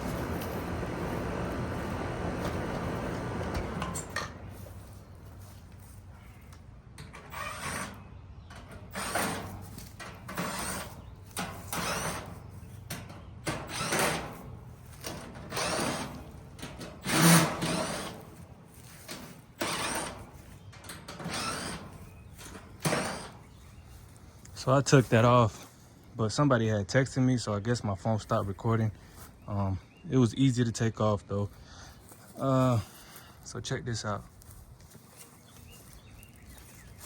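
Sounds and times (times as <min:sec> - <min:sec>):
cordless drill running in bursts: 0:00.0 - 0:04.2, 0:08.9 - 0:09.6, 0:10.3 - 0:12.4, 0:13.5 - 0:14.4, 0:15.0 - 0:18.4, 0:19.5 - 0:20.4, 0:21.2 - 0:23.4.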